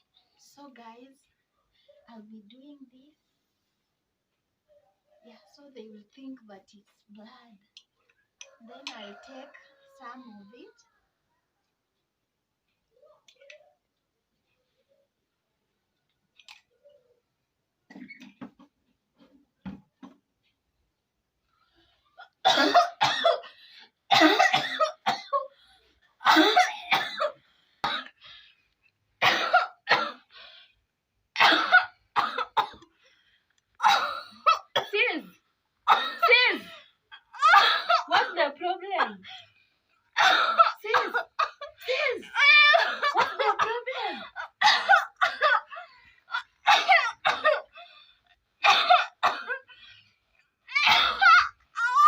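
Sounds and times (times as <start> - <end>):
woman coughing: 22.2 - 23.5, 24.1 - 25.5, 26.2 - 28.2, 29.2 - 30.3, 31.4 - 32.8, 33.8 - 35.2, 35.9 - 39.2, 40.2 - 47.8, 48.6 - 49.7, 50.7 - 51.6.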